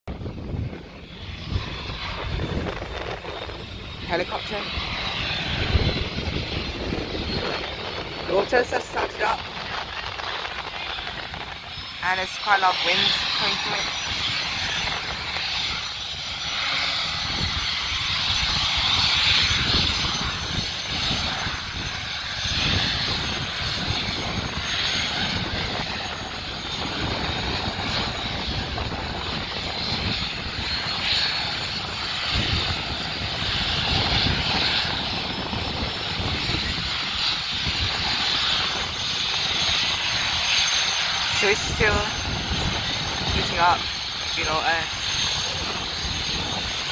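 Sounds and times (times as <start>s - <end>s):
wind rumbling on microphone: 0.0s - 46.9s
helicopter turbine engine running: 0.1s - 46.9s
helicopter blades slapping: 1.7s - 16.9s.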